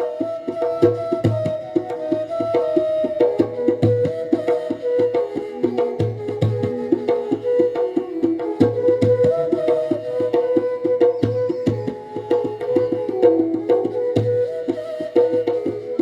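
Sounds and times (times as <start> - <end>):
tabla beat: 0.0 - 16.0.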